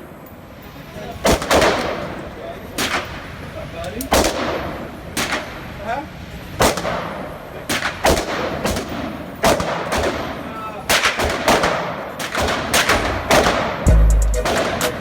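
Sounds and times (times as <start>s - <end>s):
gunshots with echo: 1.3s - 2.2s, 4.1s - 5.5s, 6.6s - 15.0s.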